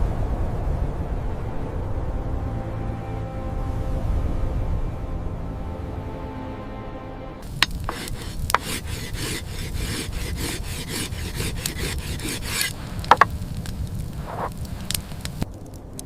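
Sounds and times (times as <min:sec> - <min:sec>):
rhythmic rasping strokes: 0:07.4 - 0:15.2.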